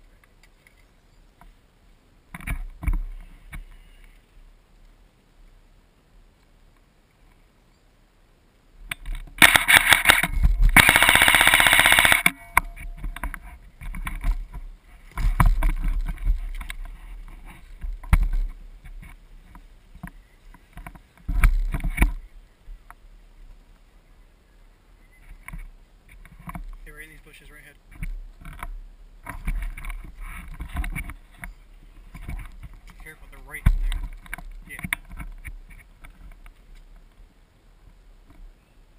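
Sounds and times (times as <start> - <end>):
airsoft rifle automatic bursts: 9.4 - 12.4.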